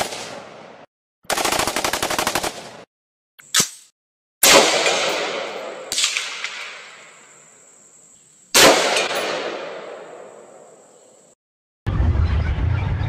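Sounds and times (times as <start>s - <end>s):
echoing gunshots and blasts: 0.0s - 2.9s, 4.4s - 7.4s, 8.6s - 11.0s.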